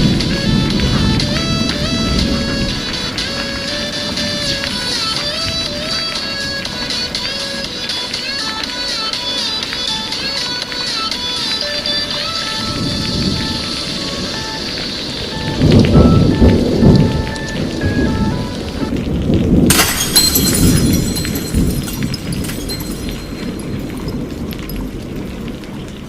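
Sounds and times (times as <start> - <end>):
low rolling thunder: 0.0 - 5.9, 12.6 - 26.0
rain: 0.0 - 26.0
simple melody of short notes: 11.7 - 19.0
sharp crack of thunder: 15.4 - 22.4.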